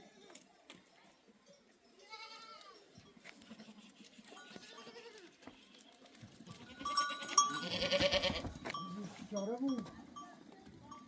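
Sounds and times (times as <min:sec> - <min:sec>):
sheep and goats bleating: 0:02.0 - 0:09.0.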